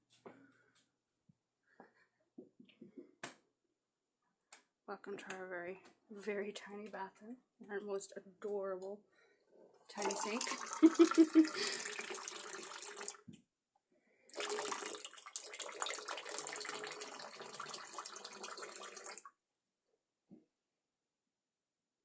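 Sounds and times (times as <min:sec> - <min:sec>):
water running from sink faucet: 0:09.9 - 0:13.2, 0:14.3 - 0:19.3.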